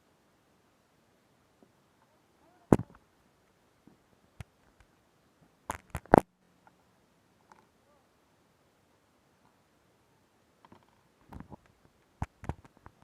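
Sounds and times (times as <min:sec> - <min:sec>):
sharp clicks and knocks: 0:05.7 - 0:06.3, 0:10.6 - 0:13.0.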